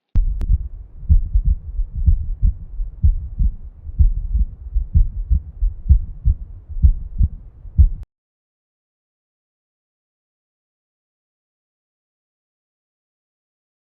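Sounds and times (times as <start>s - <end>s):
human heartbeat thuds: 0.2s - 8.0s.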